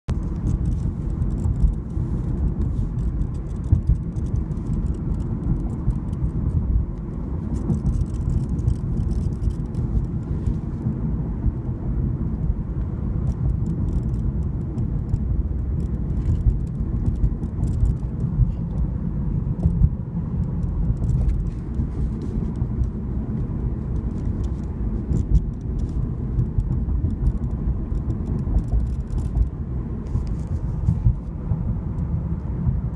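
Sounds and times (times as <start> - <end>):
car driving low rumble: 0.1 - 32.9
rattle of small clicks: 0.2 - 10.6, 12.4 - 23.0, 23.6 - 31.0.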